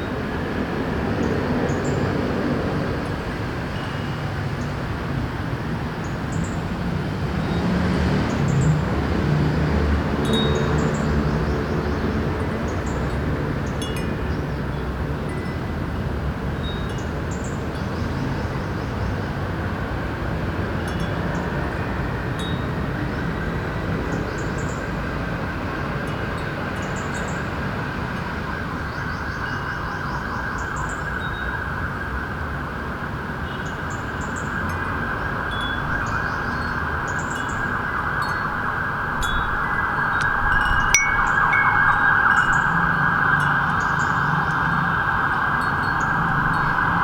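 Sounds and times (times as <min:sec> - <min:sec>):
city hum: 0:00.0 - 0:47.0
wind chime tinkling: 0:10.2 - 0:18.7, 0:34.7 - 0:47.0.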